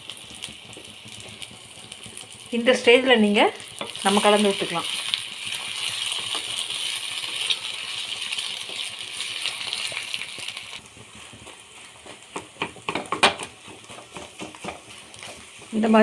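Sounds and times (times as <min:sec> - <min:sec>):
food sizzling in a pan: 0:00.0 - 0:16.0
spoon scraping a pan: 0:11.2 - 0:15.7.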